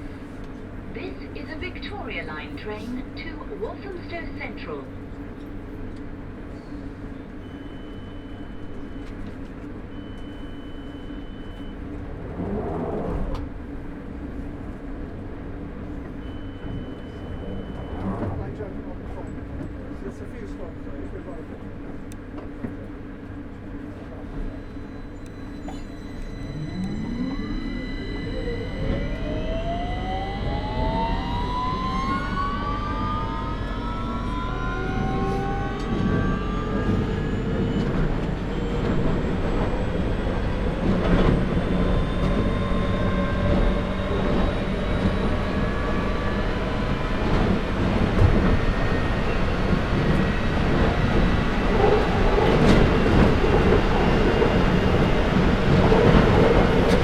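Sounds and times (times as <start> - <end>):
train running rumble: 11.5 - 57.0
train motor whine rising: 24.3 - 57.0.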